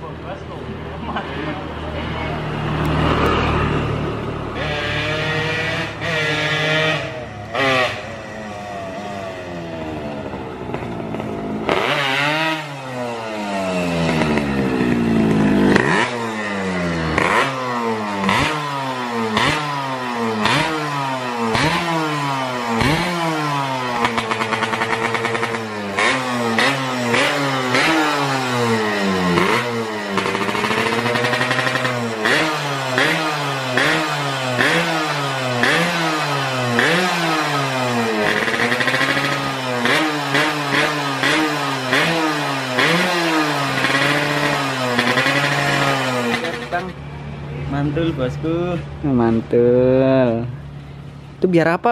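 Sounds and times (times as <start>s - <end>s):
two-stroke motorcycle engine revving: 0.0s - 47.1s.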